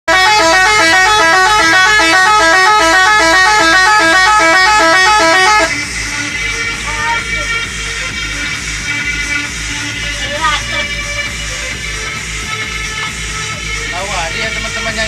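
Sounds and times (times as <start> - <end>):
bus air horn melody: 0.0 - 8.3.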